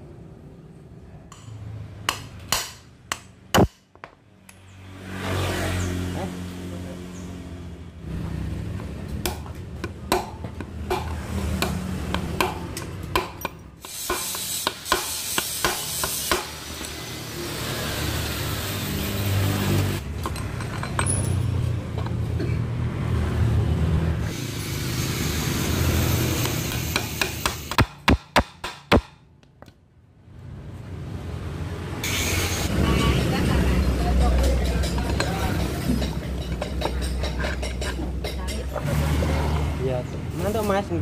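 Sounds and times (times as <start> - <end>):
metal clinks and knocks: 20.0 - 22.1, 33.8 - 38.9.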